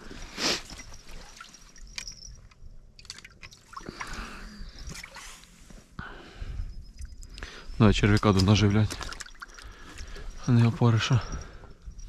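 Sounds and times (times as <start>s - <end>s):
water trickling and dripping: 0.6s - 5.2s, 6.8s - 11.6s.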